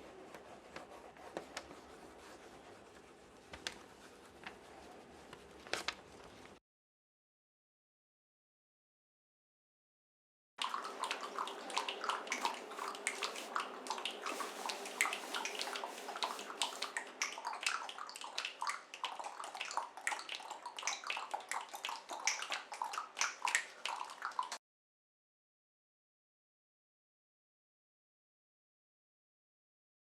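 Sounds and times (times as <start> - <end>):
water splashing in a tub: 10.6 - 24.6.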